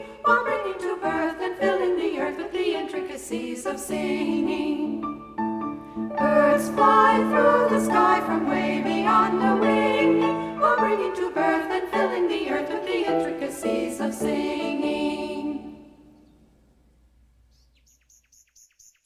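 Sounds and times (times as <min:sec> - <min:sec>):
choir singing with instruments: 0:00.0 - 0:16.3
high bird chirps: 0:17.5 - 0:19.0.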